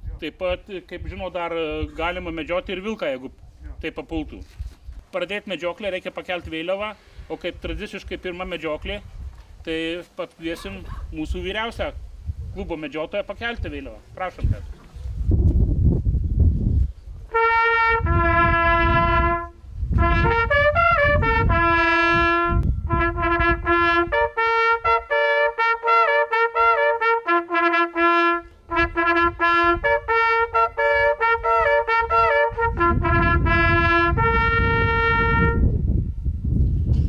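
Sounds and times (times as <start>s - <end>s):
hunting horn fanfare: 17.3s - 35.8s.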